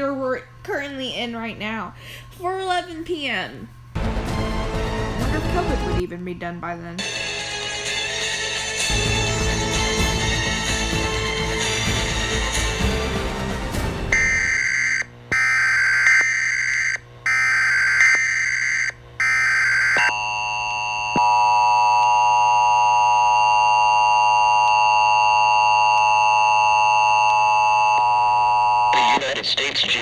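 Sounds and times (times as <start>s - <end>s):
harsh data header bursts: 14.1s - 20.0s.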